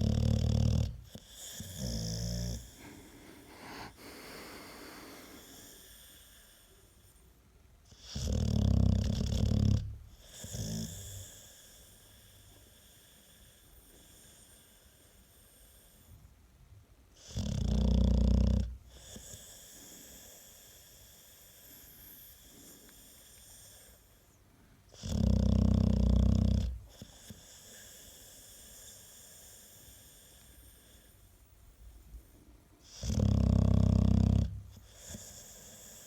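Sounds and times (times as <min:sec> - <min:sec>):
dog snoring: 0:00.0 - 0:07.2, 0:07.9 - 0:16.2, 0:17.1 - 0:31.2, 0:32.8 - 0:36.0
dog breathing quietly: 0:00.0 - 0:07.4, 0:18.5 - 0:36.0.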